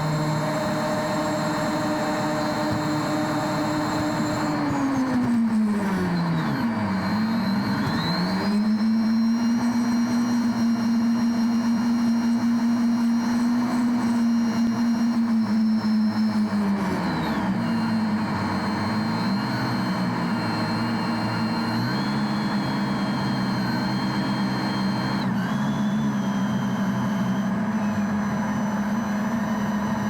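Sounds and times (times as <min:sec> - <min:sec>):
combine harvester engine running: 0:00.0 - 0:30.0
faint high whine: 0:00.0 - 0:30.0.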